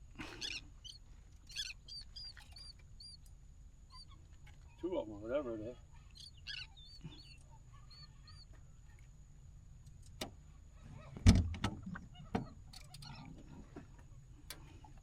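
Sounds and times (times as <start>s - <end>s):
birds giving high calls: 0.3s - 3.2s, 3.9s - 4.8s, 5.6s - 8.5s.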